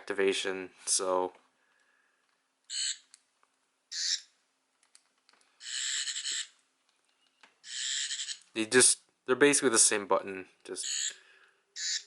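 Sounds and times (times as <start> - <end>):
toy electronic sound effect: 2.7 - 3.1, 3.9 - 4.3, 5.6 - 6.6, 7.6 - 8.5, 10.8 - 11.2, 11.8 - 12.0.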